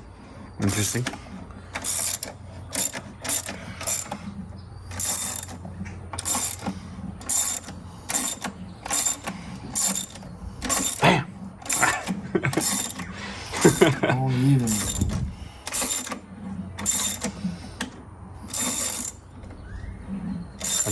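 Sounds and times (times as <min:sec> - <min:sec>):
socket ratchet clicking: 0:01.8 - 0:04.2, 0:04.9 - 0:05.6, 0:06.2 - 0:11.0, 0:15.7 - 0:16.2, 0:18.5 - 0:19.2.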